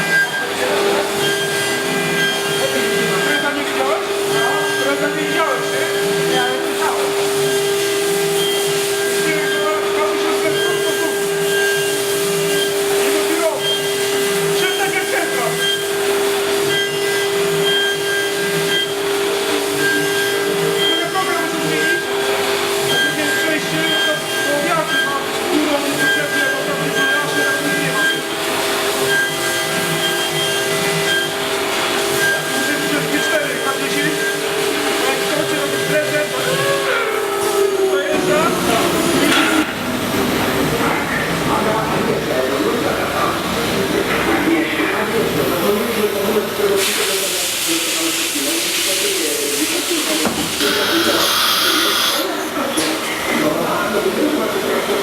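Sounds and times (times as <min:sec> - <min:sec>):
milling machine whine: 0:00.0 - 0:55.0
hiss: 0:46.8 - 0:52.3.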